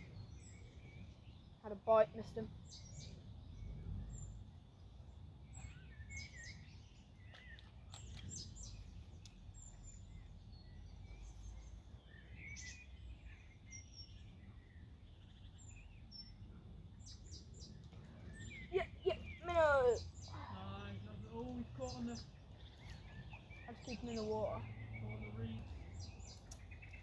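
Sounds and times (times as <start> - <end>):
low outdoor rumble: 0.0 - 5.8, 14.4 - 27.0
songbirds chirping: 0.0 - 27.0.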